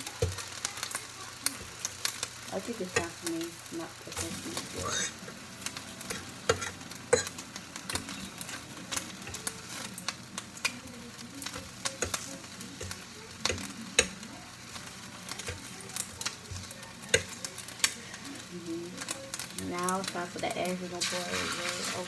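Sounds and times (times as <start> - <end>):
bacon sizzling in a pan: 0.0 - 22.0
metal fork tapping a pan: 4.1 - 18.0.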